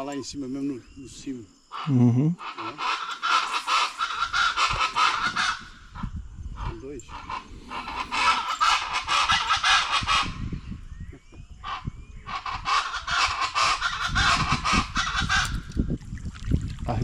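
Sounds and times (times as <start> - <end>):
birds honking harshly: 1.7 - 10.9, 11.6 - 15.7.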